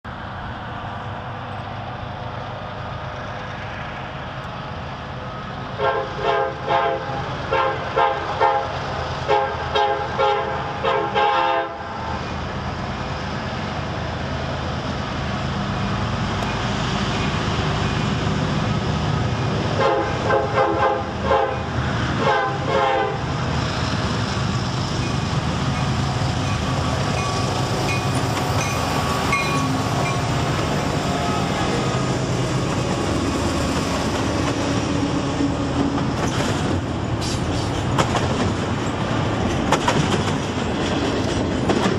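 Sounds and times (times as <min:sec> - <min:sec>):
passing train rumbling: 0:00.0 - 0:41.9
locomotive horn blasts: 0:05.8 - 0:12.0, 0:19.8 - 0:23.3
wheels clattering on rails: 0:23.9 - 0:41.9.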